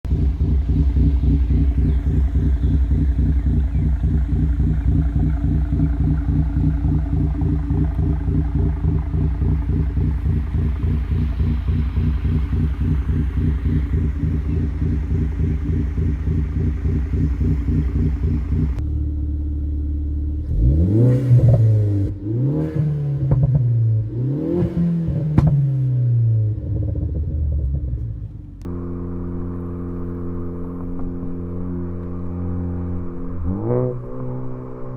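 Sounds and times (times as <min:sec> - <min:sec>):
exhaust pops and crackles: 0:00.0 - 0:18.8, 0:24.6 - 0:25.8, 0:26.6 - 0:32.8
engine revving: 0:00.0 - 0:19.1, 0:20.3 - 0:34.9
car engine idling: 0:00.0 - 0:34.9.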